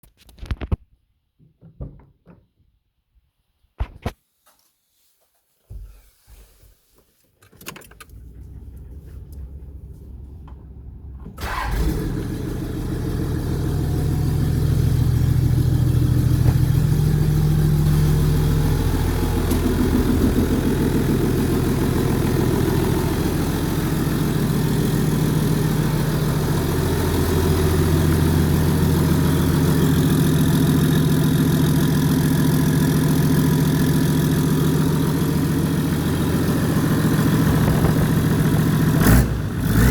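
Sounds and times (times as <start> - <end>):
diesel engine starting and idling: 7.9 - 39.9
low hum: 8.1 - 30.0.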